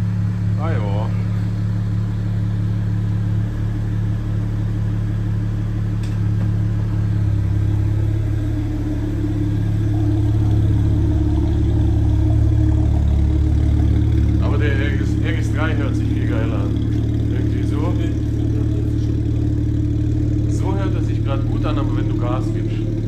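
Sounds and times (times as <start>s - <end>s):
car engine idling: 0.0s - 23.0s.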